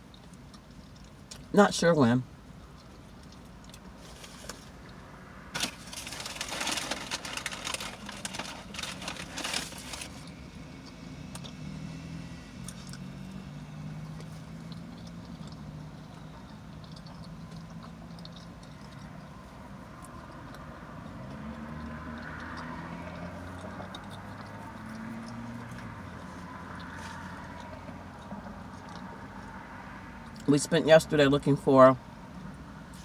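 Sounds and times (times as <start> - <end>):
low engine hum: 0.0 - 33.0
paper wrapping rustling: 5.6 - 10.3.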